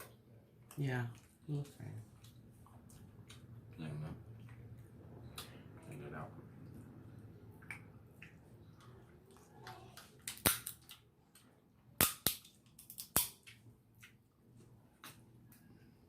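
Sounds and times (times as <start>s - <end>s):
eating clicks and smacks: 7.5s - 14.3s.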